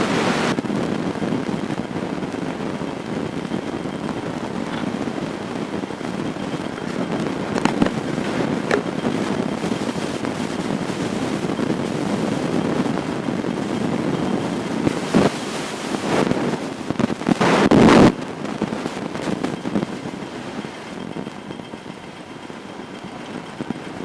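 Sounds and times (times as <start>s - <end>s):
wind rushing over microphone: 0.0s - 22.2s
motorcycle running: 0.8s - 16.9s
crackling knocks: 0.9s - 13.0s.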